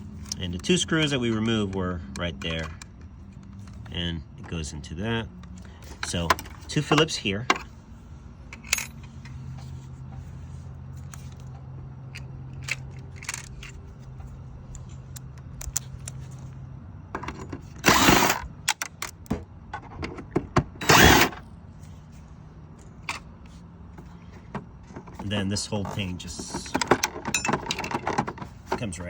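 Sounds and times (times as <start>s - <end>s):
low steady hum: 0.0s - 29.0s
cordless screwdriver whirring: 17.8s - 18.4s, 20.8s - 21.4s.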